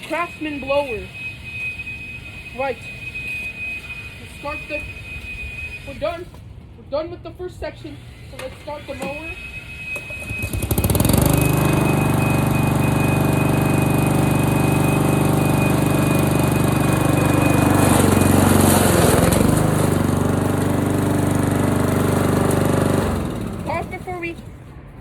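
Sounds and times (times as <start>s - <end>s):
lawn mower engine droning: 7.9s - 24.9s.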